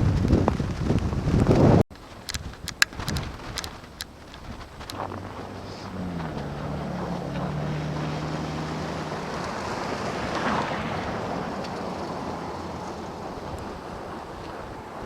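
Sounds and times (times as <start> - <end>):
blizzard wind on microphone: 0.0 - 15.0
passing vehicle engine hum: 4.7 - 15.0.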